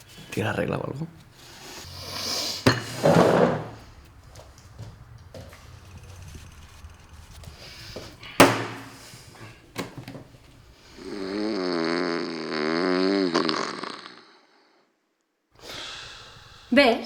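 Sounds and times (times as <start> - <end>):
man snoring: 10.9 - 14.7.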